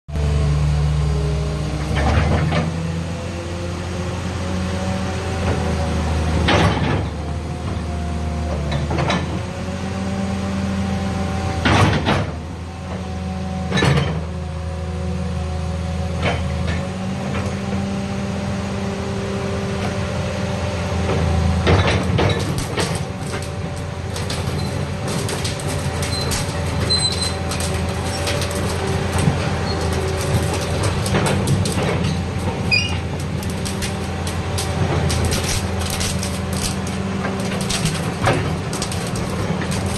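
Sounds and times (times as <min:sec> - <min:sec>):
excavator diesel engine running: 0:00.1 - 0:39.9
crackling rattle: 0:21.8 - 0:39.9.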